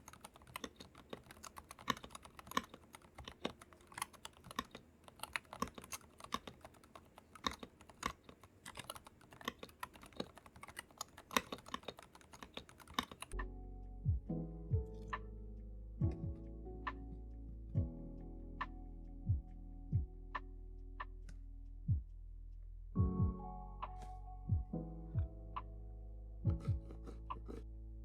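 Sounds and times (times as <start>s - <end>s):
mechanical keyboard typing: 0.0s - 13.4s
background music: 13.4s - 22.2s, 23.0s - 28.0s.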